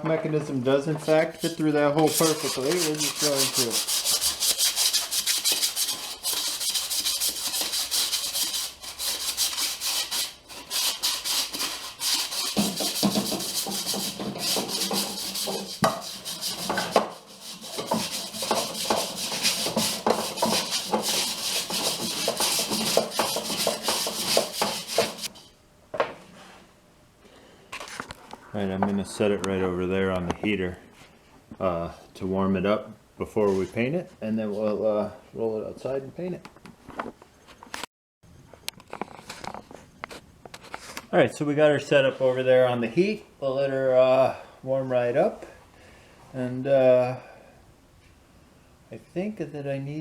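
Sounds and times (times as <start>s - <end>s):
fast rubbing strokes on metal: 1.0s - 25.3s.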